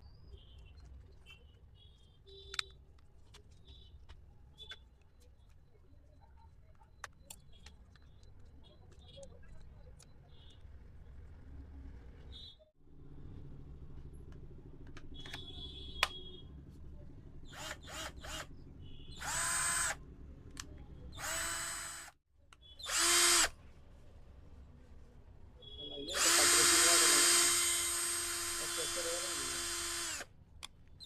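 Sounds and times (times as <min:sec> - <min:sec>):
cordless screwdriver motor whirring: 0:17.5 - 0:18.5, 0:19.2 - 0:20.0, 0:21.1 - 0:22.2, 0:22.8 - 0:23.5, 0:26.1 - 0:30.3.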